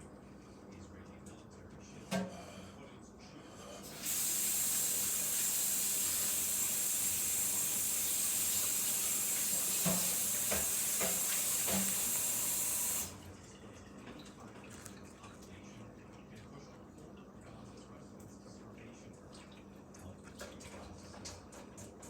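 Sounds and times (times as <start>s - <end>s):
water tap running into sink: 3.8s - 13.3s.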